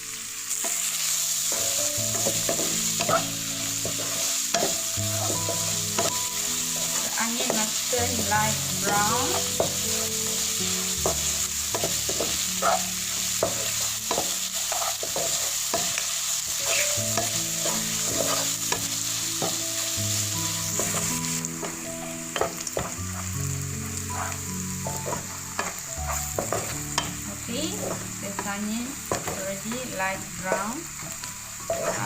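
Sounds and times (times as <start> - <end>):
onions sizzling in hot oil: 0.0 - 32.0
spoon scraping and tapping pan: 1.5 - 7.7, 13.4 - 19.6, 24.2 - 27.2, 29.1 - 29.4.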